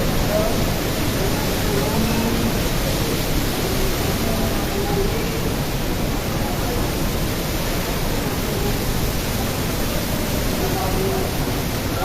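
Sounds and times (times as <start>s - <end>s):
heavy rain: 0.0s - 12.0s.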